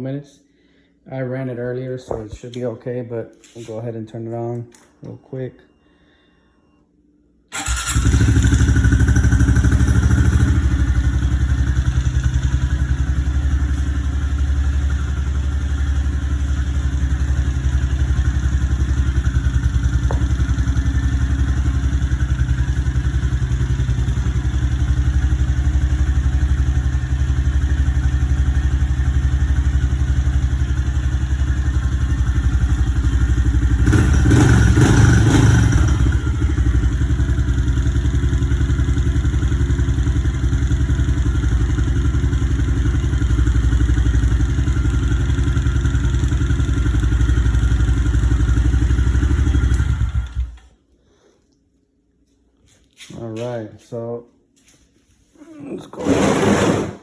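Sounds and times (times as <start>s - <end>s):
motorcycle engine idling: 7.6s - 50.6s.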